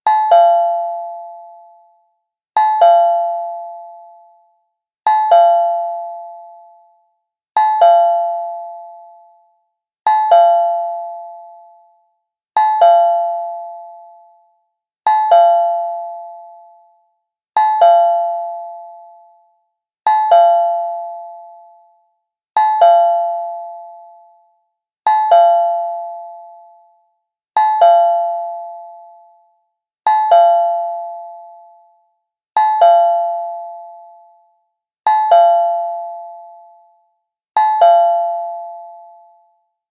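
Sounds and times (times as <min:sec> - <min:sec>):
cartoon doorbell chime: 0:37.6 - 0:39.2.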